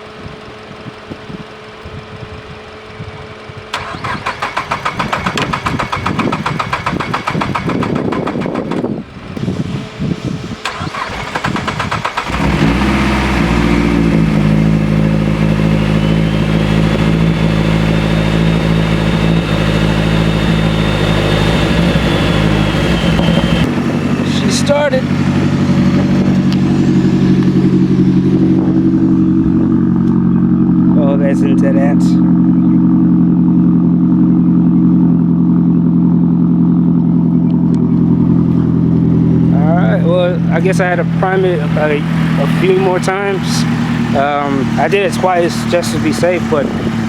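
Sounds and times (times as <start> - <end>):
engine fast idle: 0.0 - 47.0
car engine cranking on starter: 3.7 - 13.8.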